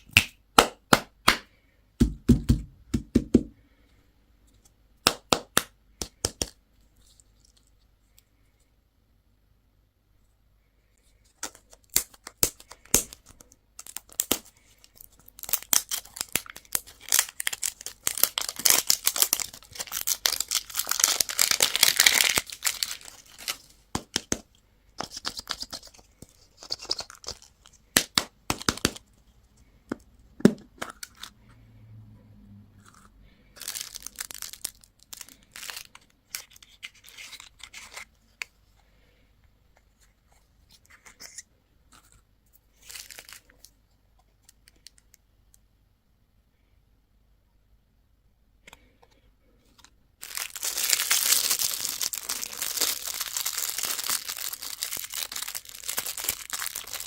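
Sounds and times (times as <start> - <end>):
plastic wrappers crinkling: 11.3 - 24.4, 25.0 - 29.1, 32.8 - 38.1, 42.8 - 43.8, 49.7 - 57.0.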